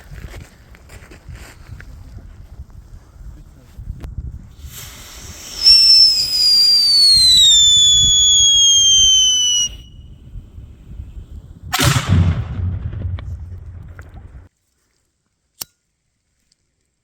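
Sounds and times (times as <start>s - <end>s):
firework whistle falling in pitch: 5.4s - 10.0s
firework bang: 11.7s - 14.5s.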